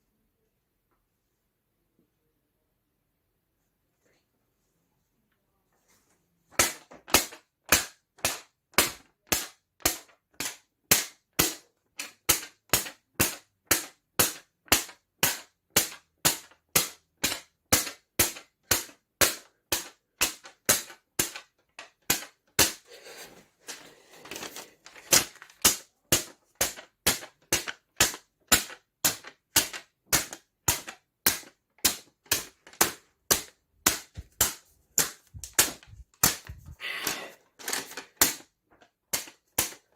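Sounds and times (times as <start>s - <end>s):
paper rustling: 22.9s - 29.9s, 32.2s - 39.9s
paper snapping: 24.2s - 38.5s.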